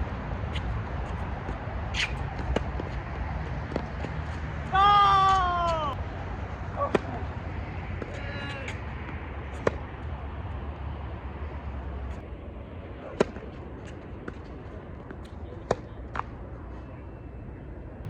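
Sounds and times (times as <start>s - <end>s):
tennis ball struck by rackets: 1.9s - 4.3s, 6.8s - 7.3s, 7.9s - 10.0s, 13.0s - 13.5s, 15.6s - 16.3s.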